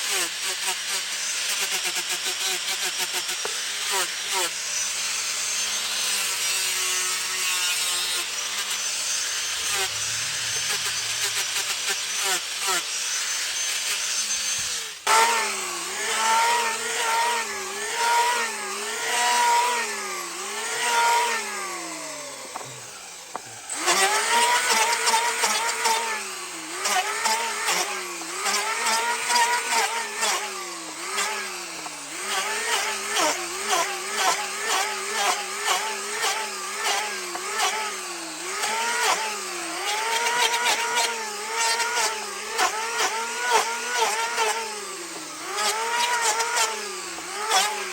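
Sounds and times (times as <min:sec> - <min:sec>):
power tool cutting wood: 0:00.0 - 0:47.9.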